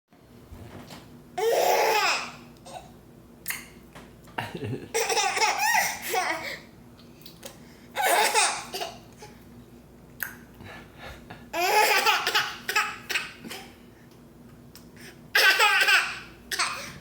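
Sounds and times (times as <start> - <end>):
baby laughing: 1.4 - 2.8, 4.9 - 6.6, 8.0 - 9.1, 11.5 - 13.7, 15.4 - 16.9.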